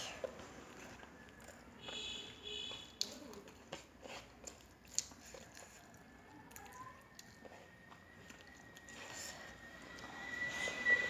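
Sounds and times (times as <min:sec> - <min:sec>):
person chewing food: 0:00.0 - 0:10.6.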